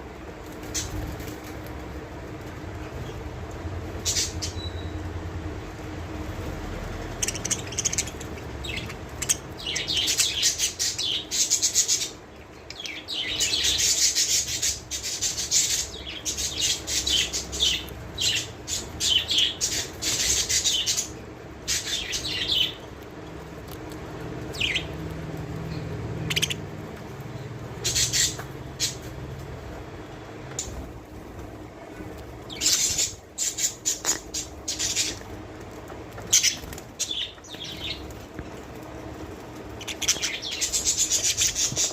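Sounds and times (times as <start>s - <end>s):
budgerigars chirping: 7.1s - 21.1s, 21.7s - 22.8s, 24.5s - 24.9s, 25.7s - 26.6s, 27.8s - 29.0s, 32.5s - 35.2s, 36.3s - 38.1s, 39.8s - 41.9s.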